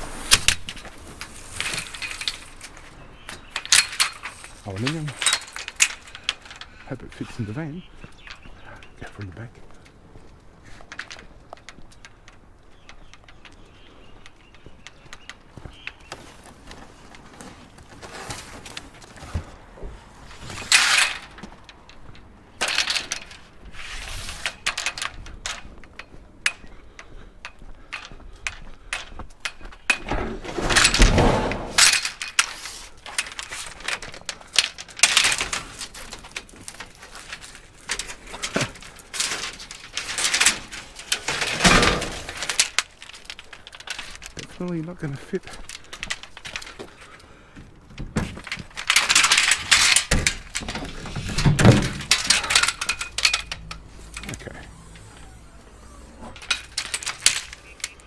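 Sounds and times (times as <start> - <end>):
metal scrap clattering in van: 0.0 - 7.6, 16.1 - 21.6, 29.9 - 44.5, 48.0 - 58.0.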